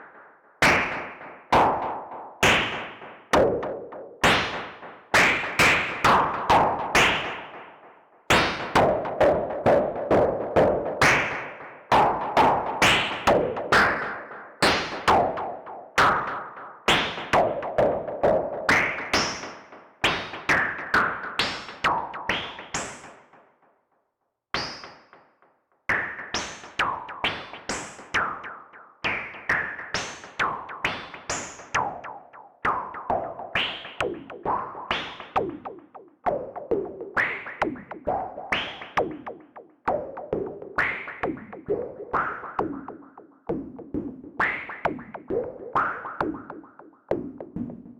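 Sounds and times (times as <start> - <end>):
synthesizer drum-like hits: 39.0 - 47.9.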